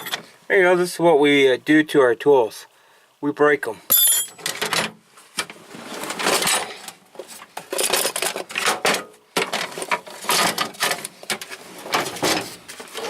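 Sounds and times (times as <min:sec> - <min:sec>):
metal tools clattering in drawer: 0:00.0 - 0:00.3, 0:06.2 - 0:06.9, 0:07.7 - 0:13.0.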